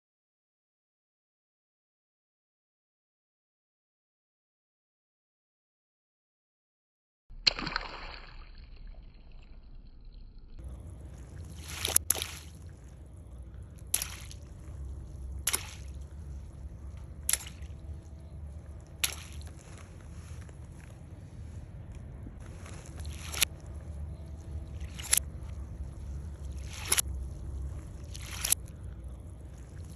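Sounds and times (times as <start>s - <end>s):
low steady rumble: 8.3s - 29.9s
water balloons bursting: 10.7s - 20.8s, 22.4s - 23.8s, 24.6s - 29.9s.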